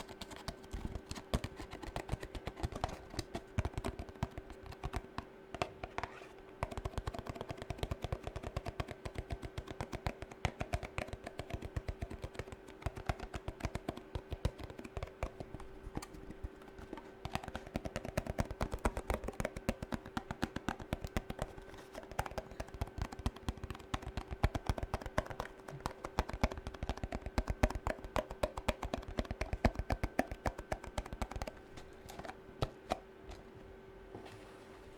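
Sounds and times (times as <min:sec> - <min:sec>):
faint steady hum: 0:00.0 - 0:34.9
fingernail tapping: 0:06.6 - 0:33.0.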